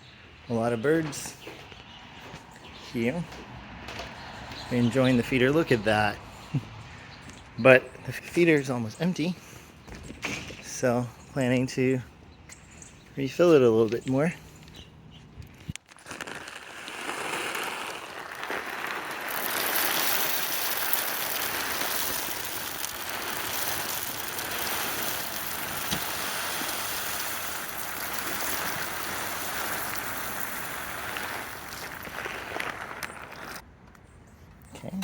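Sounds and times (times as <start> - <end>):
birdseed pouring into feeder: 15.8 - 33.6.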